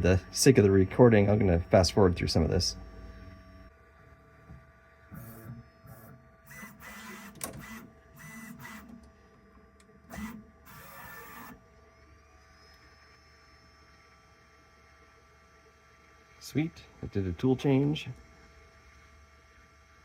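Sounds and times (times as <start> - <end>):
faint steady hum: 0.0 - 20.0
stepper motors whirring: 5.1 - 9.1, 9.8 - 14.3.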